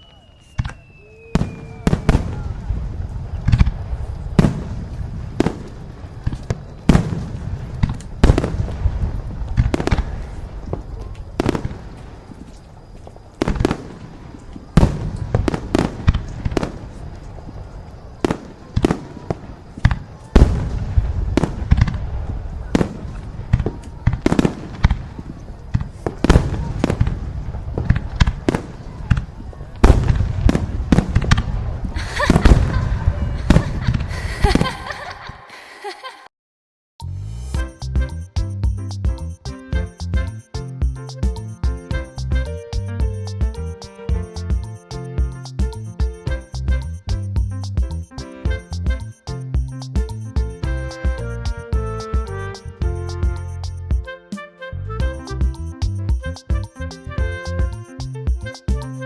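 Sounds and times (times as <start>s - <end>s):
fireworks banging: 0.0s - 35.7s.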